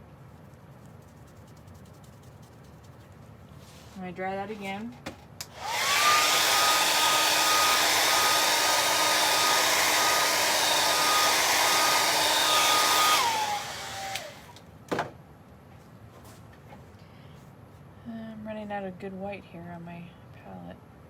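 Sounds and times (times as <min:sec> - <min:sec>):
blow dryer whirring: 0:05.4 - 0:14.6.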